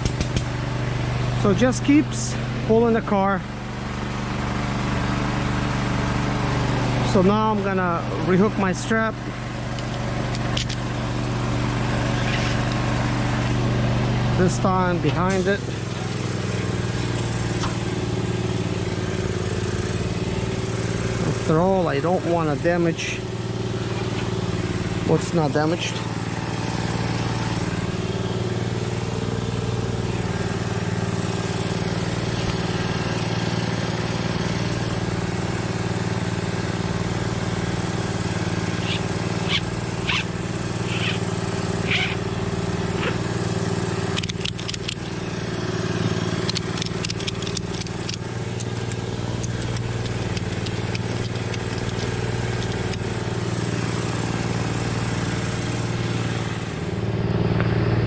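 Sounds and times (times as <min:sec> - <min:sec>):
engine running steadily: 0:00.0 - 0:58.0.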